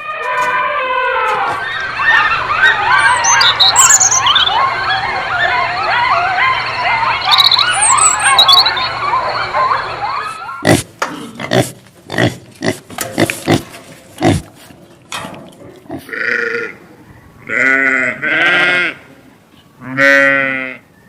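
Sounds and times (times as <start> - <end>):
high animal chirps: 1.6 - 4.7, 6.6 - 9.1
animal grunts: 10.6 - 14.6
bleat-like animal call: 16.0 - 16.8, 17.4 - 19.1, 19.8 - 20.9.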